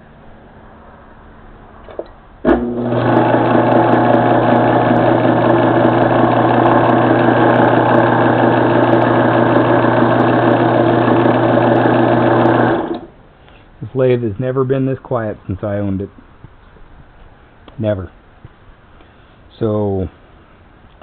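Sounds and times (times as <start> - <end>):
lathe switch: 1.9 - 13.1
lathe motor humming and whining: 2.5 - 13.1.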